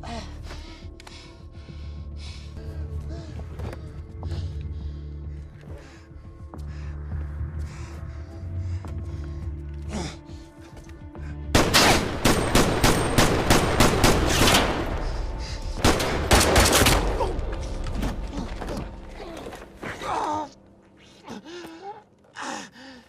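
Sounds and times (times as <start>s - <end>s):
low droning film music: 0.0s - 23.0s
heavy automatic gunfire: 11.6s - 14.8s.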